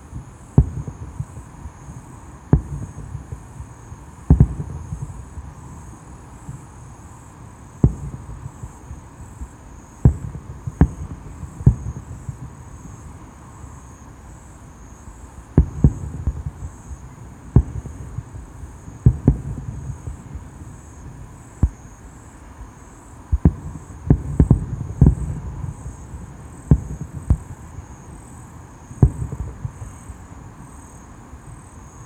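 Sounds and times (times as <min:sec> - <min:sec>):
insects chirping: 0:00.0 - 0:32.0
fireworks bangs: 0:23.3 - 0:27.6, 0:29.0 - 0:30.1.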